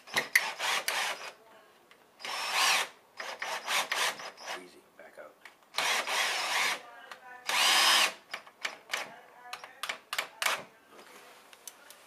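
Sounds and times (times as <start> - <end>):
power drill driving a screw: 0.1 - 1.4, 2.2 - 4.6, 5.7 - 6.8, 7.5 - 8.4.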